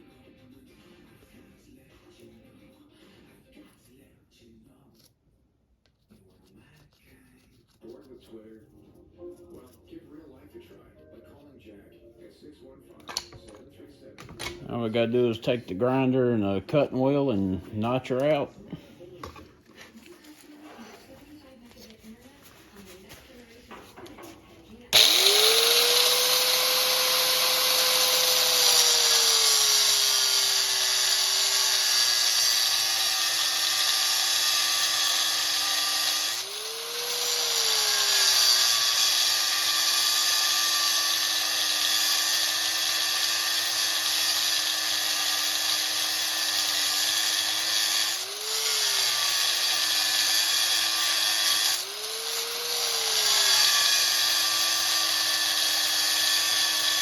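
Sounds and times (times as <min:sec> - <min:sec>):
angle grinder cutting metal: 0:14.3 - 0:18.5, 0:23.7 - 0:57.0.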